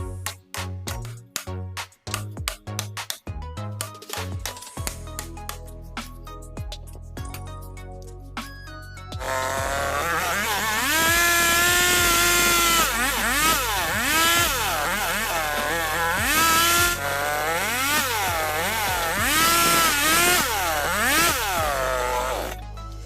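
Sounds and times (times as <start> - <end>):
chainsaw revving: 9.2 - 22.6.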